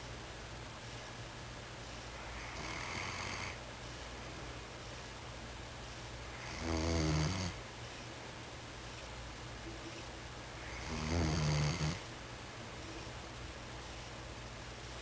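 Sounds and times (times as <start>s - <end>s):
dog snoring: 2.3s - 3.6s, 6.4s - 7.6s, 10.6s - 12.0s.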